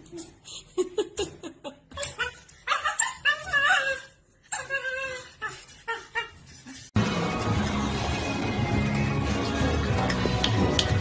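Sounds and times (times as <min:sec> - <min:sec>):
dog whining and yipping: 0:02.0 - 0:06.6
music: 0:07.0 - 0:11.0.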